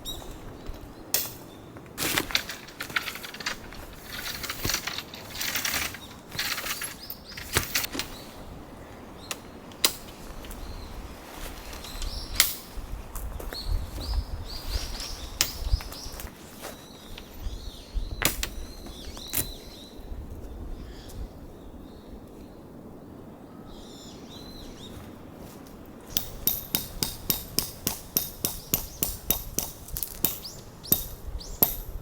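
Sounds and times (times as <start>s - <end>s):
camping gear knocks and clicks: 0.2s - 8.2s, 18.1s - 19.6s, 25.7s - 32.0s
tent fabric rustling and flapping: 2.0s - 8.3s, 11.0s - 12.1s.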